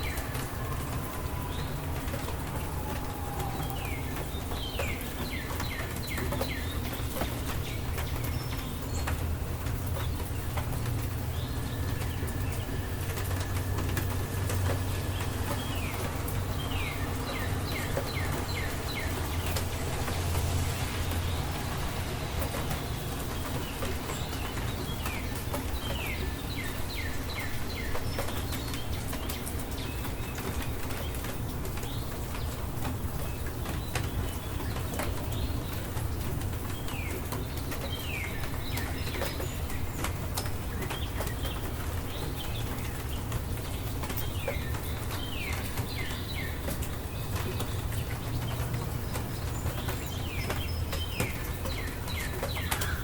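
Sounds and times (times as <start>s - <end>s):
rain drops ticking: 0.0s - 53.0s
bird chirping: 31.8s - 53.0s.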